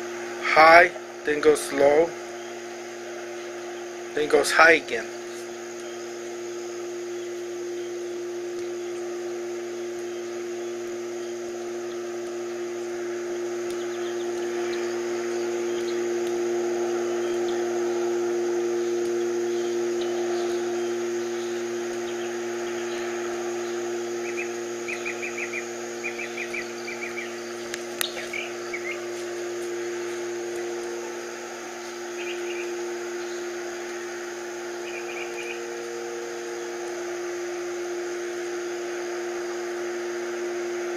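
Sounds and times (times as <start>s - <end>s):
steady humming drone: 0.0s - 40.9s
short chirping trills: 13.6s - 37.1s.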